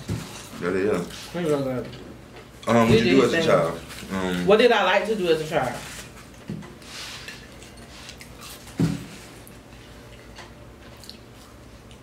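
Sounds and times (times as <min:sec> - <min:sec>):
chewing clicks and smacks: 0:10.9 - 0:12.0.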